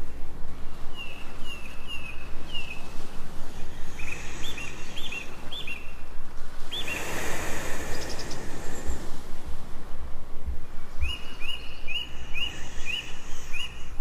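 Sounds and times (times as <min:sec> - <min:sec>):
birds chirping and whistling: 0:03.5 - 0:06.0, 0:11.0 - 0:14.0.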